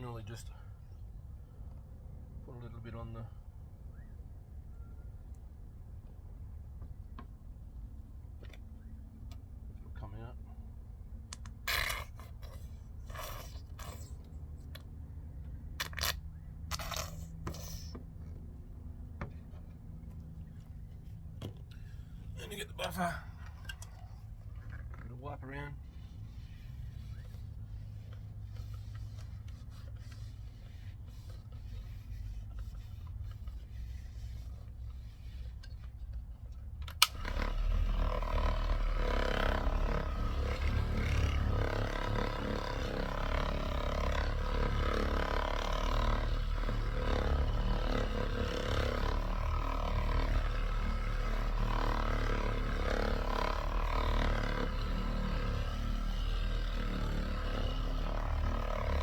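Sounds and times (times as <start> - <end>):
electric buffer running: 37.0 - 59.0.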